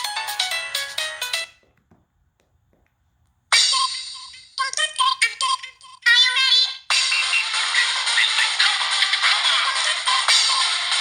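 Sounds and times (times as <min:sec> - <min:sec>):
phone ringtone tune: 0:06.9 - 0:09.3.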